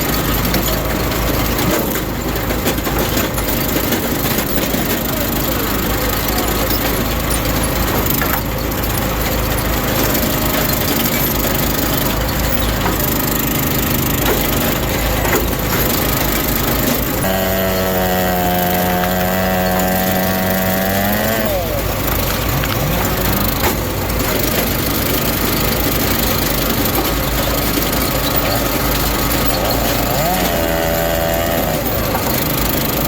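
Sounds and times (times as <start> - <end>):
wood splitting and splintering: 0.0 - 33.0
wood splitting machine running: 0.0 - 33.0
rising whine: 17.2 - 26.2.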